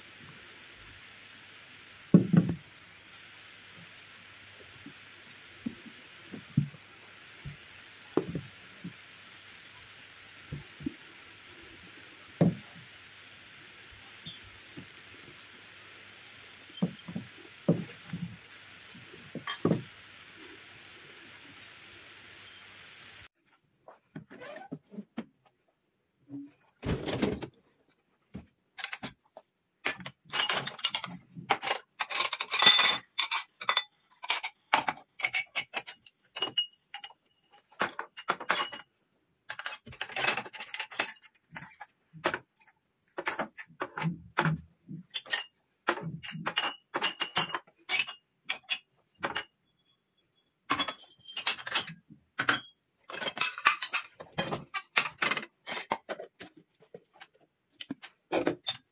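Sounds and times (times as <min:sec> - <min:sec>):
hard objects clinking and knocking: 0:16.2 - 0:18.4, 0:19.3 - 0:20.3.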